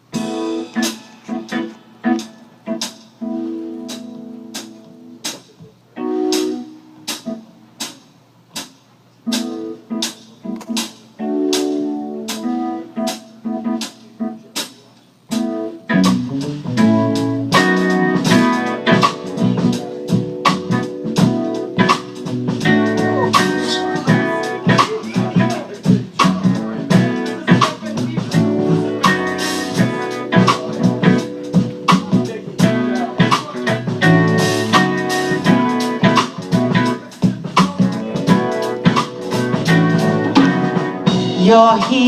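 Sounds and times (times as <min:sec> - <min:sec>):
steady percussive beat: 0:00.0 - 0:05.6, 0:16.0 - 0:42.0
guitar chords: 0:00.0 - 0:07.9, 0:09.2 - 0:14.5, 0:15.3 - 0:42.0
live band playing: 0:00.0 - 0:42.0
deep bass: 0:16.0 - 0:41.4.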